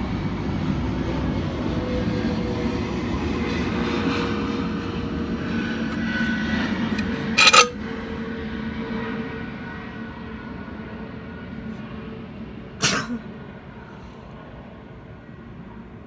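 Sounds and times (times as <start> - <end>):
woman sneezing: 12.8 - 13.2.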